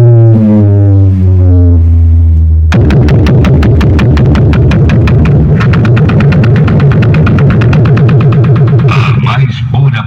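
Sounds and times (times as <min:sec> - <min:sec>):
loud electronic music: 0:02.7 - 0:10.0.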